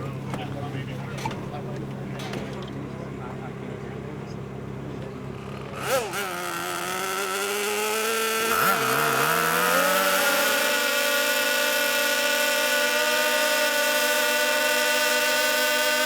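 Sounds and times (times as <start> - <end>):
model airplane engine at high revs: 5.3 - 16.0.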